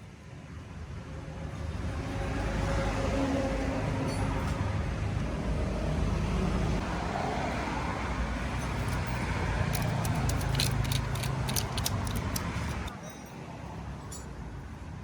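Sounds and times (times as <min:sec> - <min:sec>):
sharp clicks: 0:09.7 - 0:12.9.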